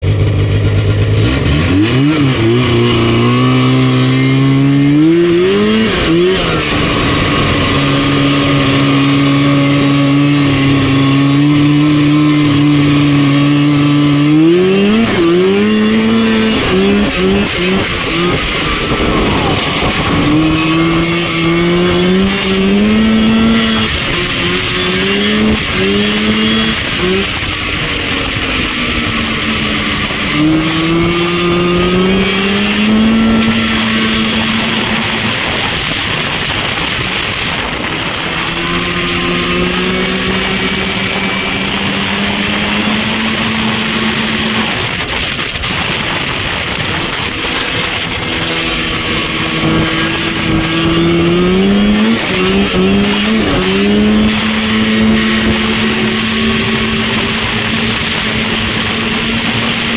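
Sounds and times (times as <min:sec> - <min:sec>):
snowmobile engine revving: 0:00.0 - 0:59.9.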